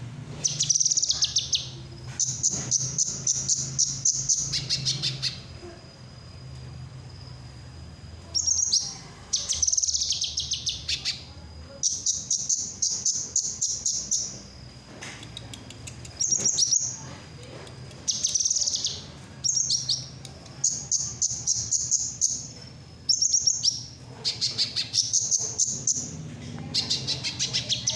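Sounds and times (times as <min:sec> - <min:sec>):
songbird chattering song: 0:00.3 - 0:06.2, 0:08.2 - 0:27.9.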